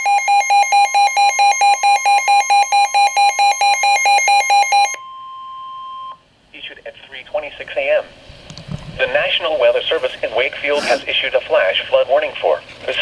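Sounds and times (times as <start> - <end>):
fast pulsing alarm beeps: 0.0 - 6.2.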